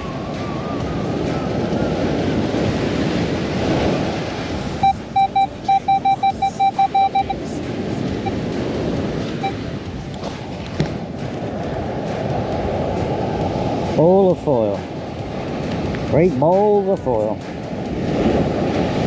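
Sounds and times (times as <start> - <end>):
wind on microphone: 0.0 - 14.0, 17.4 - 19.0
surf: 0.0 - 19.0
metal detector beeping: 4.8 - 7.4, 8.2 - 8.4, 9.4 - 9.7.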